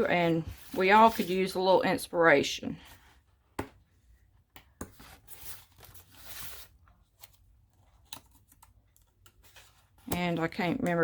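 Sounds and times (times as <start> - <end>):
page turning rustle: 5.0 - 10.0.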